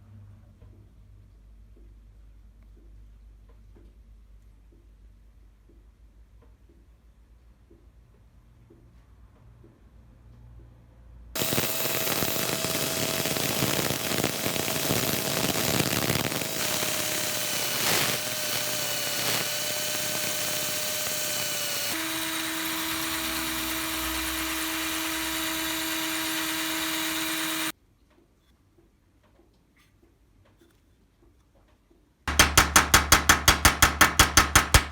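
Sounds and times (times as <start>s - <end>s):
electric power tool whining: 11.4s - 27.7s.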